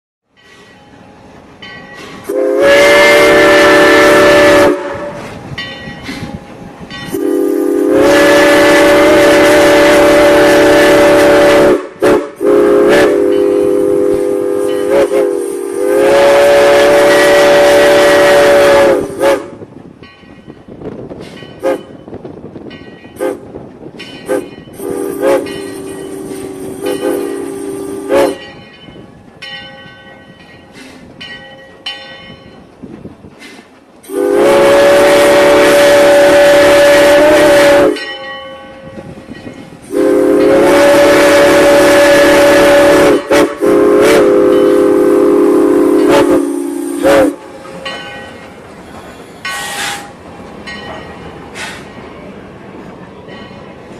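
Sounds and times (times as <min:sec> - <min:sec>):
locomotive horn chord: 0:02.3 - 0:05.2, 0:07.1 - 0:19.6, 0:24.3 - 0:28.4, 0:34.1 - 0:38.0, 0:39.9 - 0:47.6.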